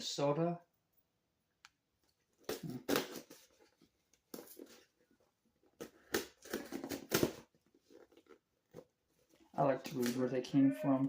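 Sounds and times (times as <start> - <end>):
package rustling and scraping: 2.4 - 9.6.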